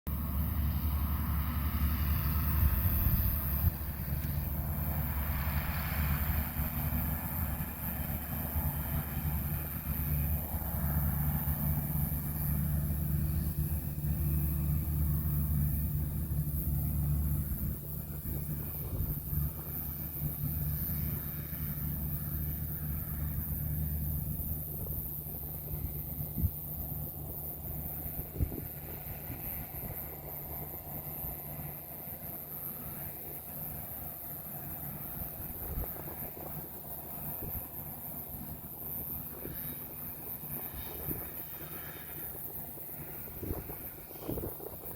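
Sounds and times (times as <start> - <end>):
farm machinery engine humming: 0.1 - 44.9.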